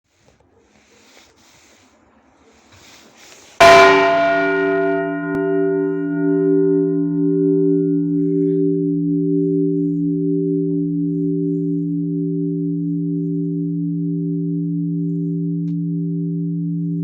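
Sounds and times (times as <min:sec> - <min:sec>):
large church bell struck: 0:03.6 - 0:14.4.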